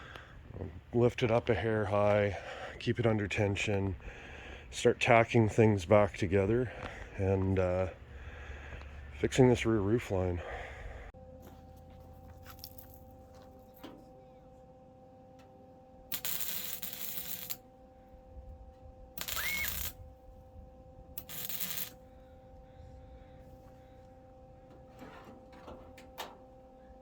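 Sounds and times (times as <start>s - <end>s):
steady hum: 0.0s - 27.0s
short bursts of welding: 16.1s - 17.6s, 19.2s - 19.9s, 21.2s - 22.0s.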